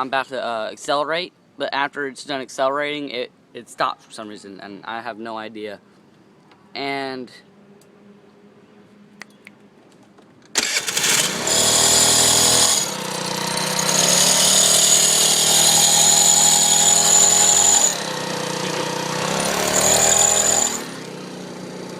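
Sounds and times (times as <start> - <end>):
moped engine revving: 10.6 - 21.9.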